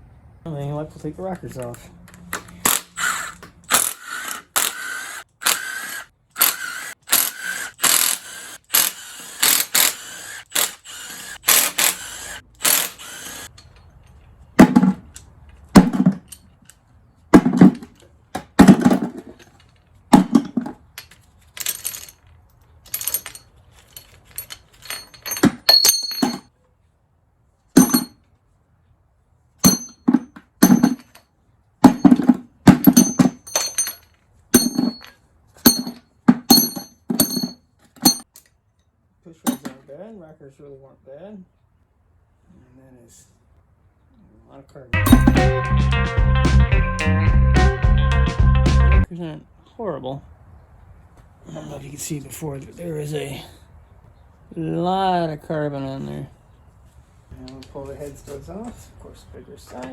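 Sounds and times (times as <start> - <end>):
metal parts knocking and clinking: 17.5 - 26.5, 27.8 - 28.2, 29.6 - 31.2, 31.8 - 38.6, 39.4 - 39.8.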